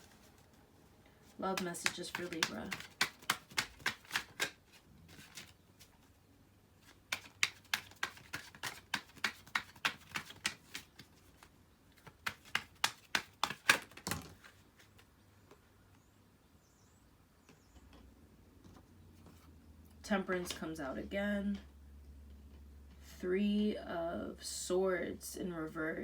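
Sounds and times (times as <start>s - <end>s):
cards being shuffled: 1.5s - 6.0s, 6.8s - 15.0s.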